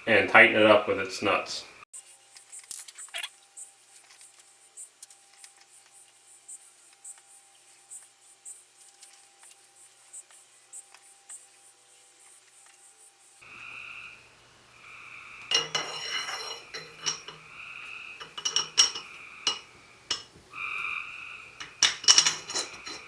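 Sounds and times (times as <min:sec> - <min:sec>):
steel balls clicking: 0:02.0 - 0:13.4.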